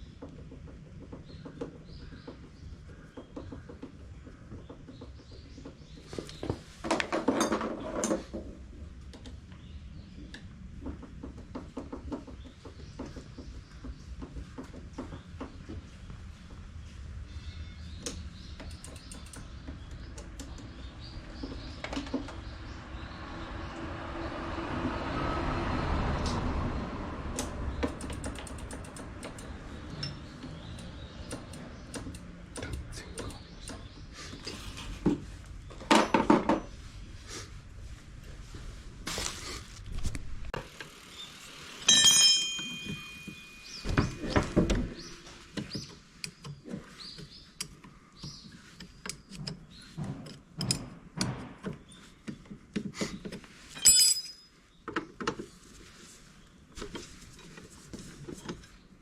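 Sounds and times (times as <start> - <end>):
tools clicking and knocking: 27.4 - 33.9, 41.9 - 44.8, 47.2 - 55.5
ringing metallic clink: 41.8 - 44.5, 53.8 - 54.6.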